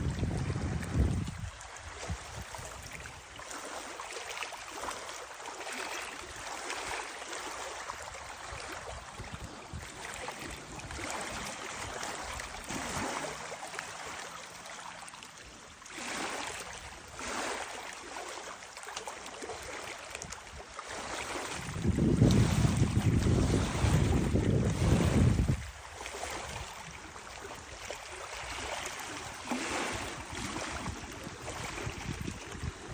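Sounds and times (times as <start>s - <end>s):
wind buffeting microphone: 0.0s - 3.2s, 7.8s - 13.2s, 20.2s - 32.9s
small waves lapping: 0.0s - 32.9s.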